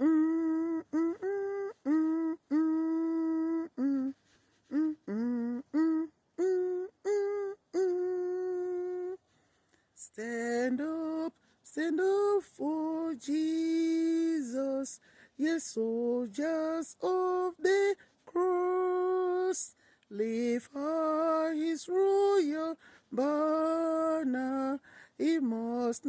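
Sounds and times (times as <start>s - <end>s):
woman singing a hymn: 0.0s - 9.3s, 10.0s - 26.0s.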